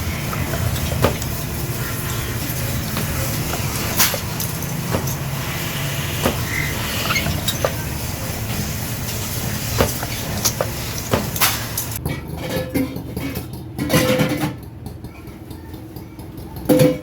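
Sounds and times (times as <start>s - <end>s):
workshop machinery humming: 0.0s - 12.3s.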